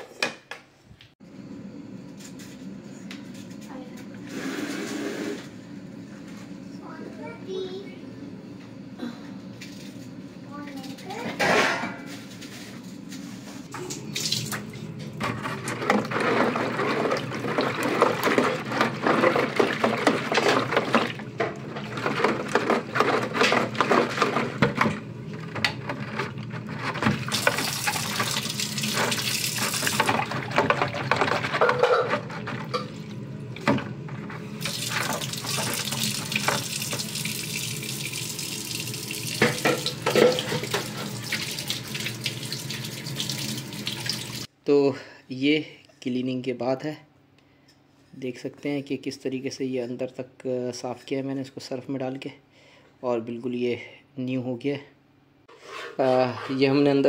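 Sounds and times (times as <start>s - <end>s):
tap water running and splashing: 13.8s - 22.0s, 27.1s - 31.4s, 34.5s - 44.5s.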